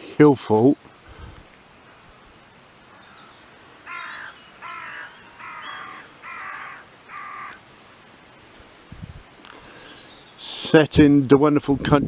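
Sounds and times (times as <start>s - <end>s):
crow cawing: 2.9s - 7.7s.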